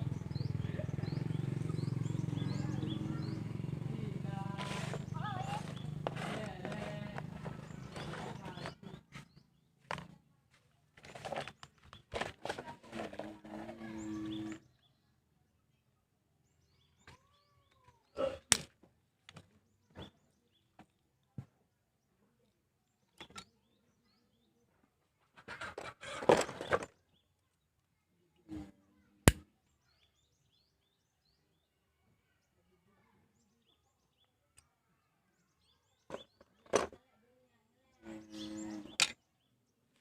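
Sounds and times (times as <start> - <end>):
scraping rustle: 4.5 - 9.3, 11.0 - 14.6.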